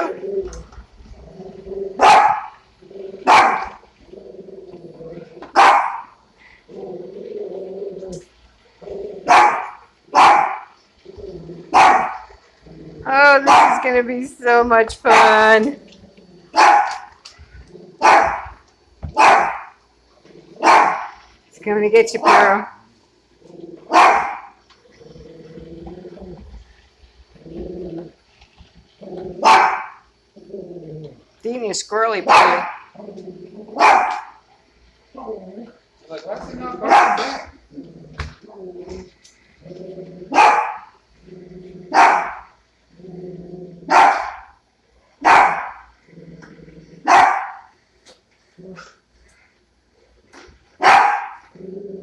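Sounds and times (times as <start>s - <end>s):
dog growling: 0.0s - 13.9s, 15.1s - 18.6s, 22.1s - 28.2s, 29.0s - 31.4s, 32.3s - 34.4s, 35.1s - 44.6s, 45.3s - 47.5s, 48.4s - 49.0s, 50.8s - 52.0s
dog barking: 2.0s - 2.5s, 3.3s - 3.8s, 5.6s - 6.1s, 9.3s - 10.7s, 11.7s - 12.3s, 13.4s - 13.8s, 16.6s - 17.1s, 18.0s - 18.6s, 19.2s - 19.7s, 20.6s - 21.1s, 22.2s - 22.6s, 23.9s - 24.5s, 29.4s - 30.0s, 32.3s - 32.9s, 33.8s - 34.4s, 36.8s - 37.4s, 40.3s - 40.9s, 41.9s - 42.5s, 43.9s - 44.5s, 45.2s - 45.8s, 47.1s - 47.7s, 50.8s - 51.5s.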